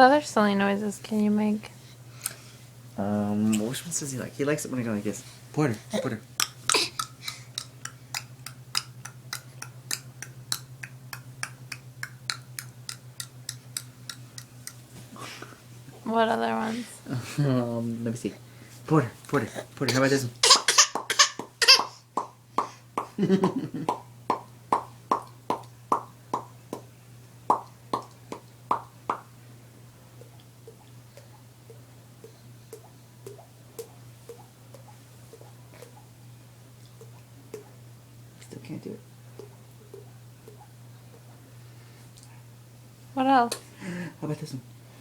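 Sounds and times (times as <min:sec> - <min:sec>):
man clicking his tongue: 0:06.4 - 0:14.8
mouth pops: 0:39.3 - 0:41.3.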